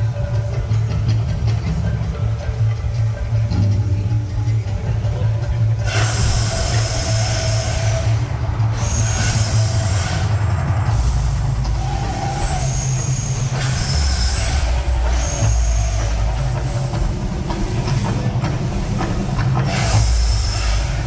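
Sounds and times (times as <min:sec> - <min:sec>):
deep rumble: 0:00.0 - 0:21.0
hissing rushes: 0:05.8 - 0:21.0.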